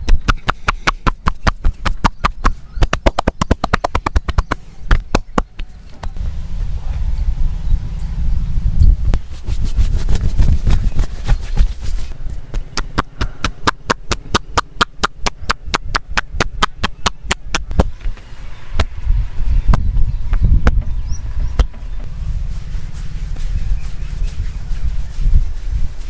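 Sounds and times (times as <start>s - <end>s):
hands slapping in massage: 0.0s - 6.2s, 9.5s - 17.9s.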